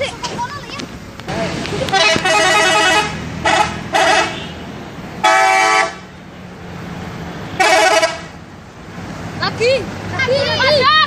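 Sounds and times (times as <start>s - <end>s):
musical truck air horn: 2.0s - 6.1s, 7.6s - 8.3s.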